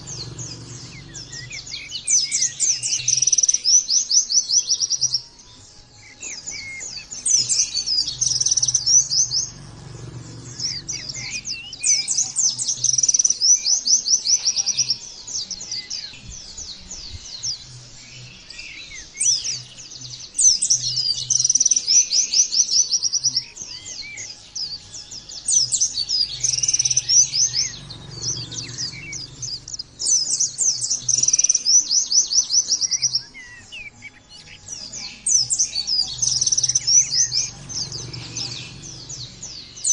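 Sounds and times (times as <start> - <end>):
bird singing fast trills: 0.0 - 39.9.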